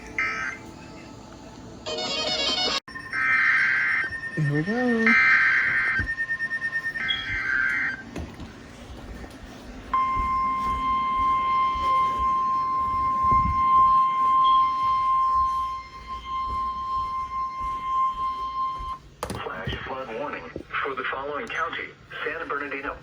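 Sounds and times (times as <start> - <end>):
high steady alarm tone: 1.8 - 8.2, 9.9 - 19.2
faint radio hiss: 19.4 - 23.0.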